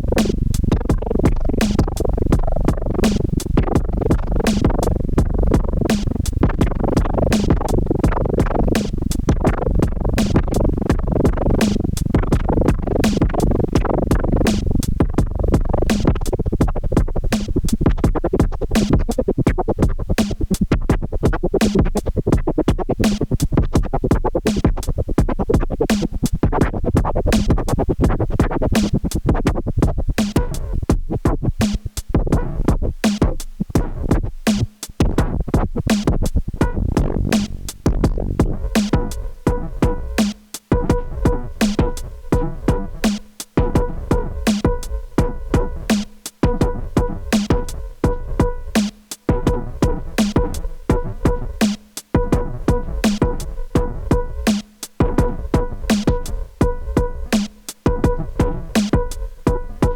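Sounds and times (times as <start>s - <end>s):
low pulsing synth note: 0.0s - 16.9s, 36.6s - 40.2s, 40.8s - 51.6s, 52.2s - 59.9s.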